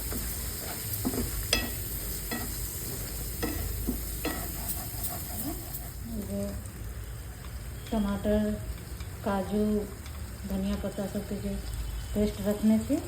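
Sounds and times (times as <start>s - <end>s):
oil sizzling: 0.0s - 13.0s
spoon scraping in pan: 0.2s - 6.2s.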